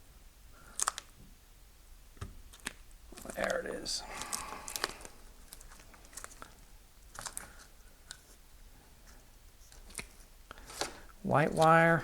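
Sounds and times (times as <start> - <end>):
plastic rustling: 2.5 - 8.4, 9.6 - 11.9.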